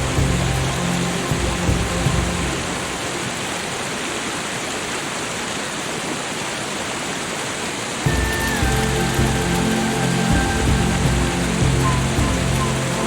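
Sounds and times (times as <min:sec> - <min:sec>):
rushing water: 0:00.0 - 0:13.0.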